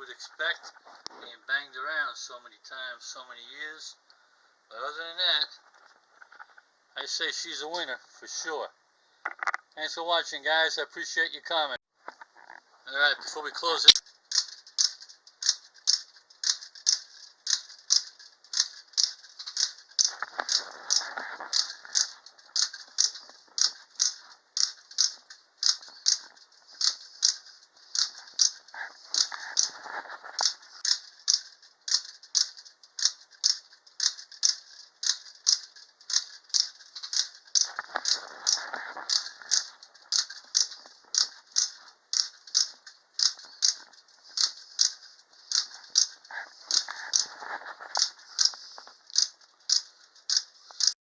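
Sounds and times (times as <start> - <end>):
wind-up toy clicking: 13.9 - 51.0.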